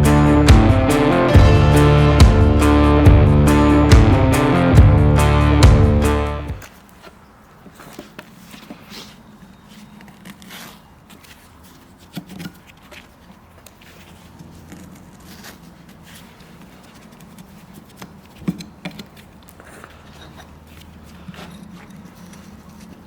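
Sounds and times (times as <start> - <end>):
steady low hum: 0.0 - 6.6.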